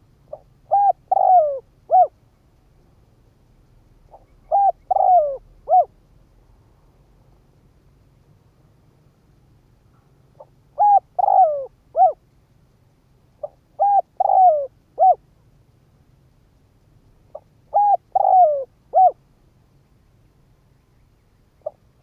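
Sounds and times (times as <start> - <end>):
dove cooing: 0.0 - 2.2, 4.1 - 6.0, 10.4 - 12.2, 13.4 - 15.2, 17.3 - 19.2, 21.6 - 22.0.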